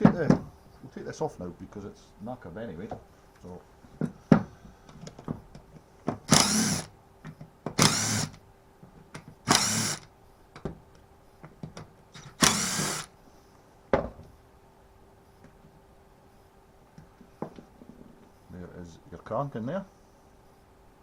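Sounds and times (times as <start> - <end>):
power drill bursts: 6.3 - 6.9, 7.8 - 8.4, 9.5 - 10.1, 12.2 - 13.1.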